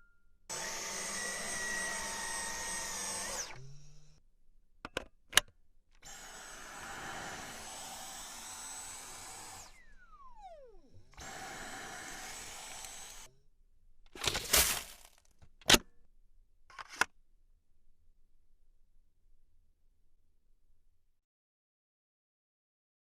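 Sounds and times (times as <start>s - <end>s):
stick vacuum motor whining: 0.5s - 4.2s, 6.0s - 13.4s, 14.1s - 15.8s
rustling: 14.1s - 15.4s.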